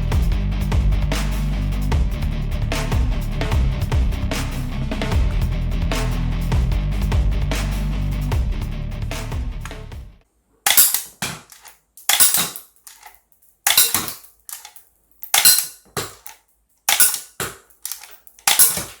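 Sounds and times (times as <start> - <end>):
bb pistol snaps: 10.7 - 19.0.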